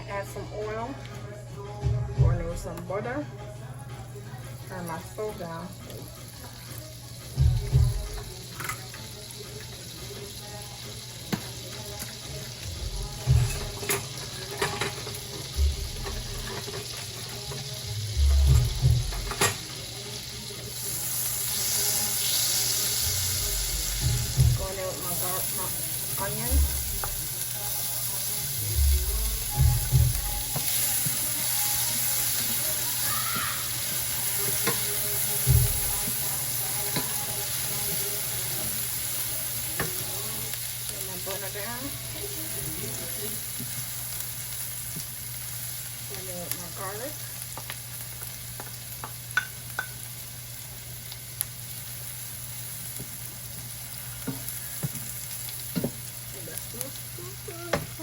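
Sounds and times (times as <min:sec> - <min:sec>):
butter and oil sizzling in a pot: 0:00.0 - 0:58.0.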